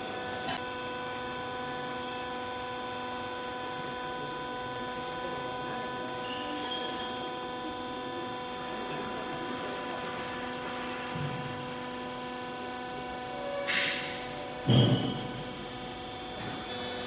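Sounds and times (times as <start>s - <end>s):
electric motor and pump humming: 0.0s - 17.0s.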